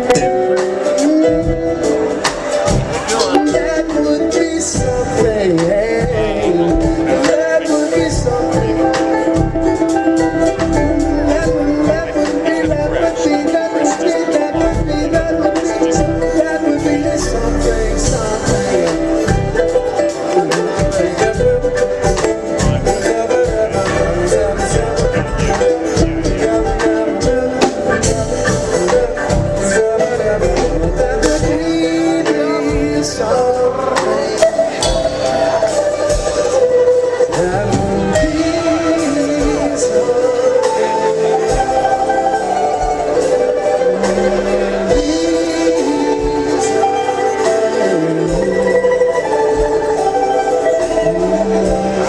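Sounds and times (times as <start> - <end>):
acoustic band playing: 0.0 - 52.0.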